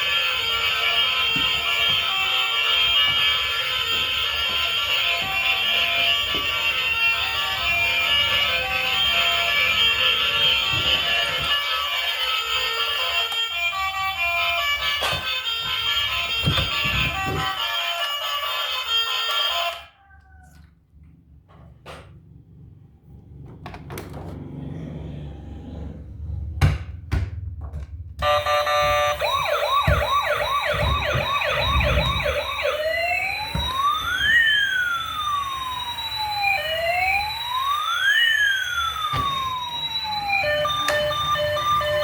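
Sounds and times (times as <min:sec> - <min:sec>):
toy electronic siren: 0:00.0 - 0:20.7, 0:28.2 - 0:42.0
steady beeping tones: 0:28.2 - 0:34.2.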